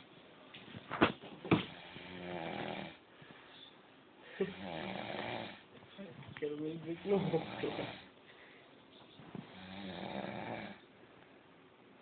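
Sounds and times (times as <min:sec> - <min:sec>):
person snoring: 0:01.7 - 0:03.0, 0:04.4 - 0:05.6, 0:07.0 - 0:08.1, 0:09.5 - 0:10.8.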